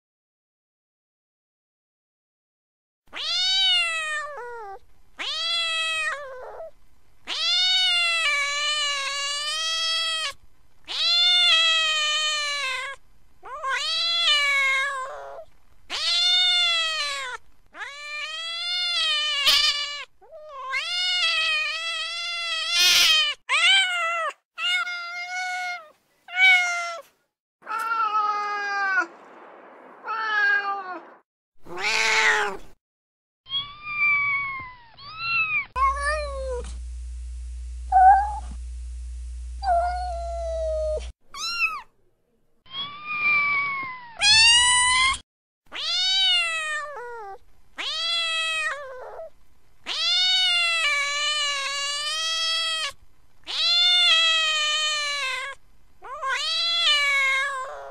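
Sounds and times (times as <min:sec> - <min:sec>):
cat meowing: 0:03.1 - 0:06.7, 0:07.3 - 0:29.0, 0:31.6 - 0:32.7, 0:33.5 - 0:36.7, 0:39.6 - 0:41.9, 0:42.7 - 0:49.3, 0:49.9 - 0:57.9
steady low hum: 0:35.8 - 0:41.1.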